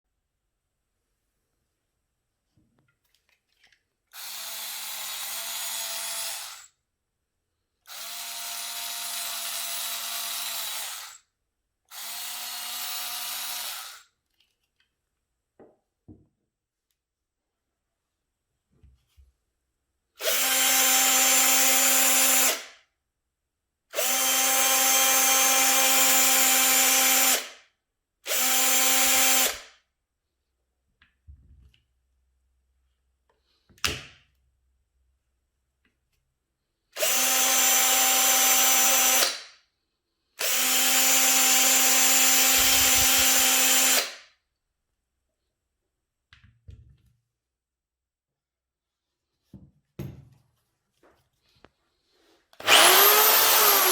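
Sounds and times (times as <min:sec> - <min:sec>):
electric drill motor running: 0:04.2 - 0:06.6, 0:07.9 - 0:11.2, 0:11.9 - 0:14.0, 0:20.2 - 0:22.6, 0:24.0 - 0:27.5, 0:28.3 - 0:29.6, 0:37.0 - 0:39.3, 0:40.4 - 0:44.0, 0:52.6 - 0:53.9.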